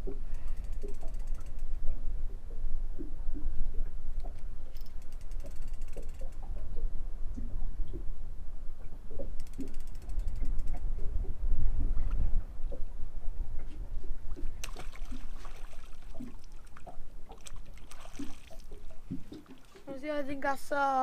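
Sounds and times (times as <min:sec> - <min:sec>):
low rumble: 0:06.4 - 0:14.6.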